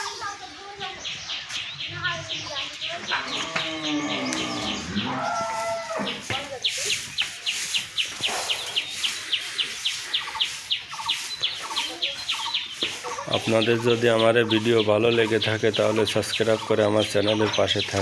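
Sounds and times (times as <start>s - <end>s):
cattle mooing: 3.2s - 6.0s
high rapid chirping: 6.2s - 18.0s.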